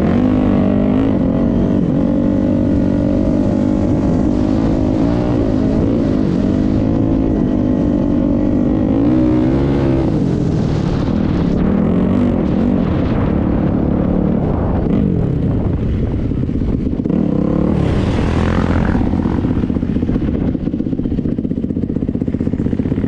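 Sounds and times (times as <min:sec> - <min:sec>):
vehicle engine running: 0:00.0 - 0:23.0.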